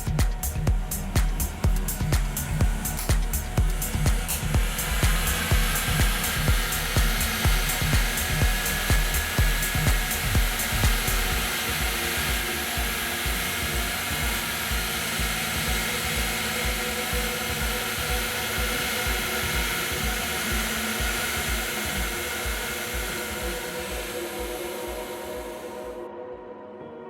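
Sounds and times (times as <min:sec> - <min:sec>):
rush of blown air: 0:00.0 - 0:26.1
background music with beat: 0:00.0 - 0:27.0.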